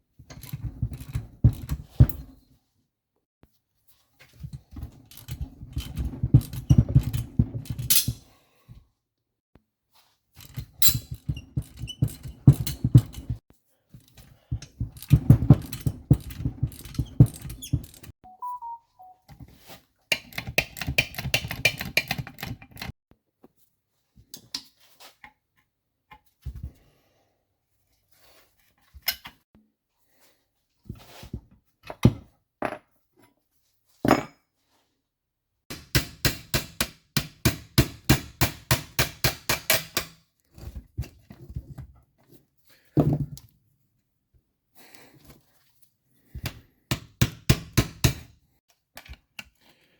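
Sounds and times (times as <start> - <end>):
tools clicking and knocking: 0.3 - 2.3, 4.4 - 8.3, 10.4 - 13.4, 14.0 - 18.1, 20.1 - 22.9, 35.7 - 41.1, 46.4 - 48.3, 48.9 - 49.6.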